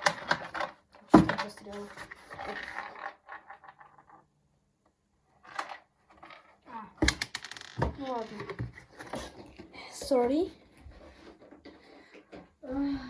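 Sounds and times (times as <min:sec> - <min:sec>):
plastic parts rattling: 0:00.0 - 0:04.2.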